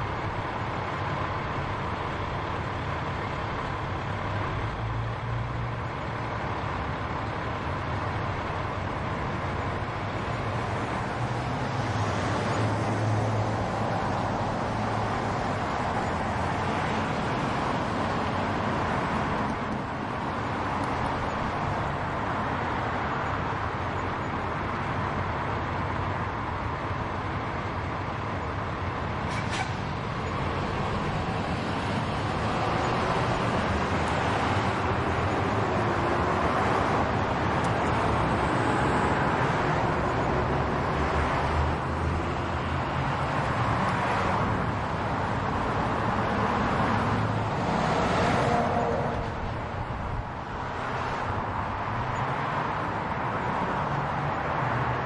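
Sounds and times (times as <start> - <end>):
road traffic: 0.0 - 55.0.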